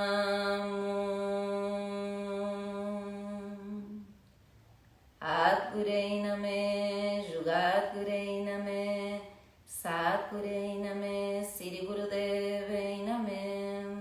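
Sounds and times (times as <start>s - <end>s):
person chanting: 0.0s - 4.1s.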